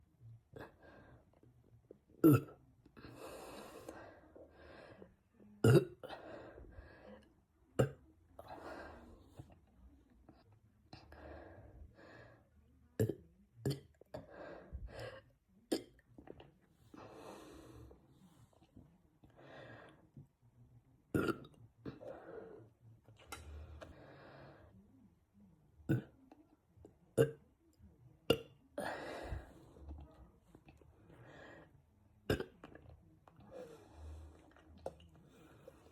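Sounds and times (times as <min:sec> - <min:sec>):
man burping: 0:02.2 - 0:02.6.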